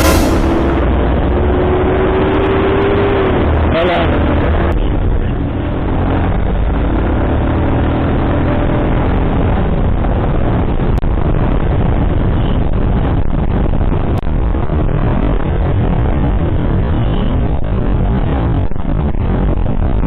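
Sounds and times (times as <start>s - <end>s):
road noise: 0.0s - 20.0s
wind noise on microphone: 4.4s - 20.0s.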